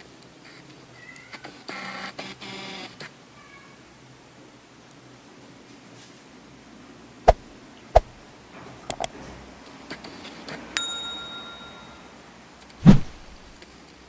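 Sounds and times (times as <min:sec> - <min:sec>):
sharp clicks: 0:08.9 - 0:09.1
bell-like ding: 0:10.8 - 0:12.1
heavy thump: 0:12.8 - 0:13.5.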